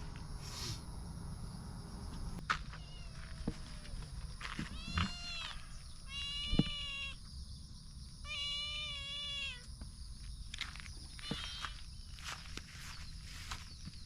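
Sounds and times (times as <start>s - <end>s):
animal drawn-out cries: 4.7s - 7.2s, 8.2s - 9.6s.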